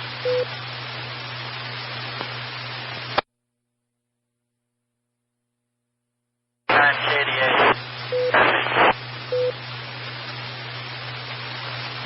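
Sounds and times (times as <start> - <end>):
steady low hum: 0.0 - 3.2, 6.7 - 12.0
radio static hiss: 1.7 - 3.2, 6.7 - 12.0
radio squelch click: 6.7 - 9.0.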